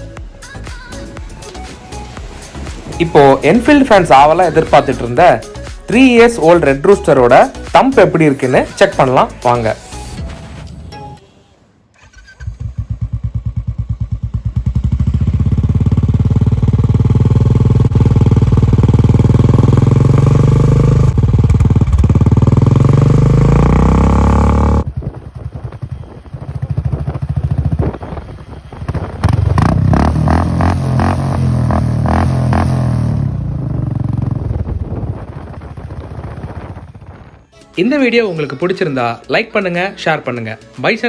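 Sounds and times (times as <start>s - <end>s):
motorcycle engine exhaust thump: 12.6s - 37.4s.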